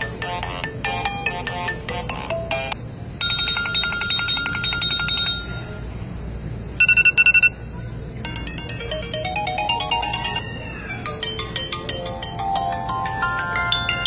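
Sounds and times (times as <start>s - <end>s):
melodic ringtone tune: 0.0s - 5.8s, 8.2s - 14.0s
rapid trill of beeps: 0.0s - 5.8s, 6.8s - 7.6s, 8.2s - 10.4s
steady low hum: 0.0s - 14.0s
repeating chime pattern: 8.2s - 10.4s.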